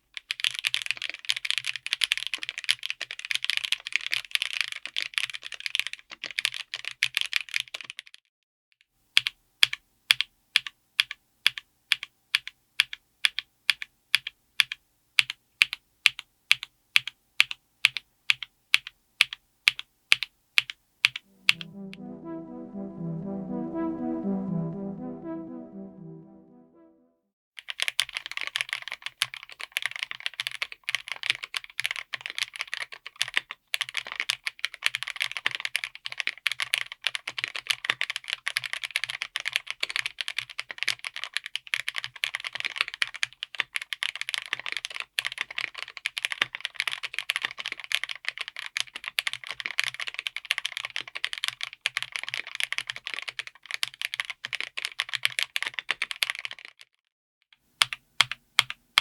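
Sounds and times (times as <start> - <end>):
fast mechanical keyboard typing: 0.2 - 8.0, 27.7 - 56.8.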